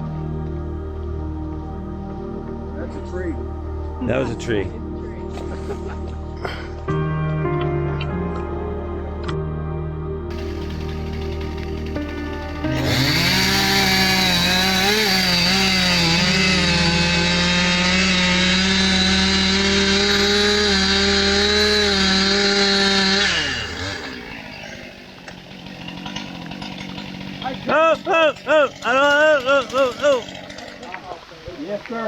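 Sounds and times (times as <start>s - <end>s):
chainsaw cutting at high revs: 10.3s - 31.2s.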